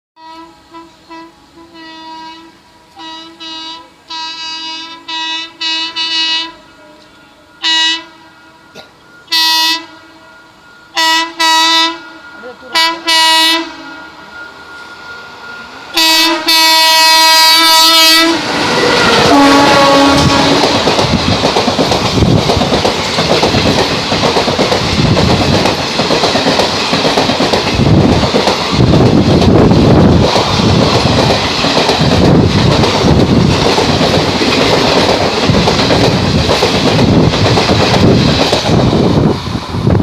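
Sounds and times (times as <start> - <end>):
locomotive air horn: 0.2 - 20.8
train rushing past: 0.2 - 40.0.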